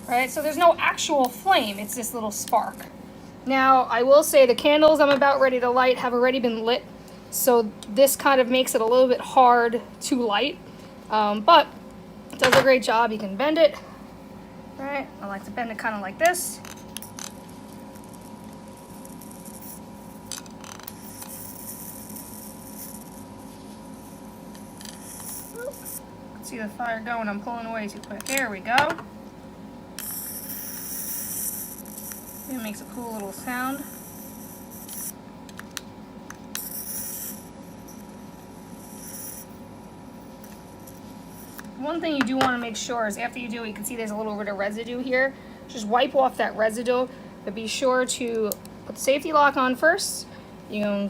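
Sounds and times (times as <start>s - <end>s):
steady background hum: 0.0s - 51.0s
electric arc lighter crackling: 30.0s - 38.0s.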